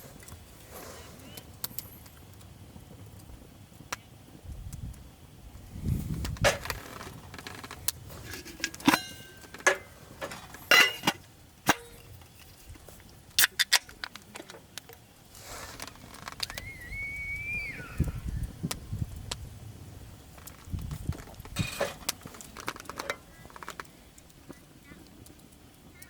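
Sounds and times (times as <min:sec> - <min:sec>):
metal cookware clinking: 0:08.2 - 0:12.2, 0:21.6 - 0:22.1.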